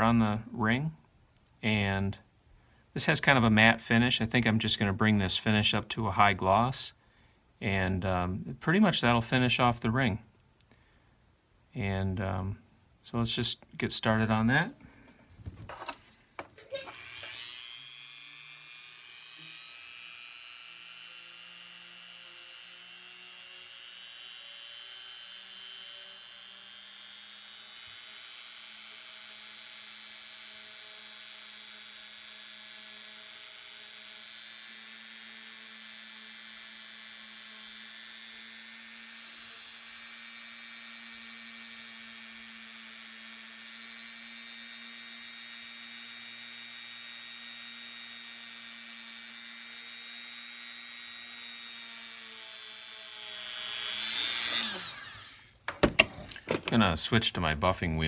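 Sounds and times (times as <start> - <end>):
rotary tool motor whining: 15.4 - 56.7.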